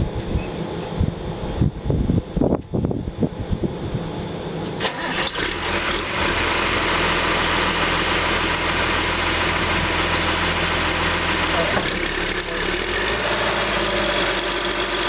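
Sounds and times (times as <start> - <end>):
diesel engine starting and idling: 4.8 - 15.0.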